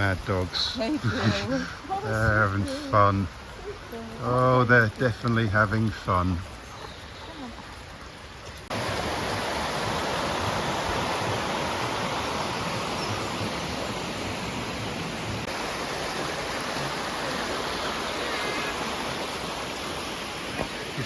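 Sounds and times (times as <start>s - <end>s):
fast-flowing river water: 0.0s - 21.0s.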